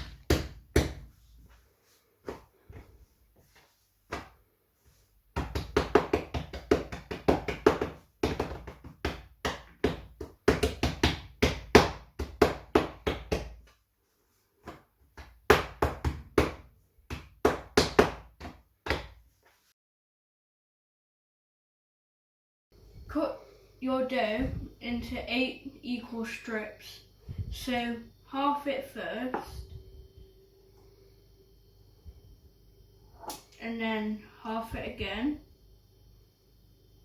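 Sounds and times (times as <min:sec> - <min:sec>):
hands patting bread dough: 0:00.0 - 0:01.6, 0:04.1 - 0:04.4, 0:05.3 - 0:13.8, 0:14.6 - 0:19.2.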